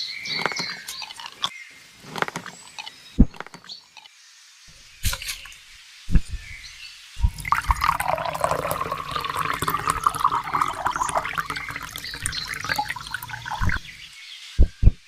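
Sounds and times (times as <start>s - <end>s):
water gushing: 7.2s - 14.0s.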